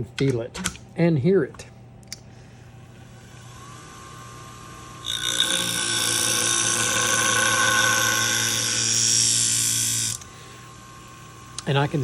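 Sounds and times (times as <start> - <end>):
motor hum: 2.4 - 12.0.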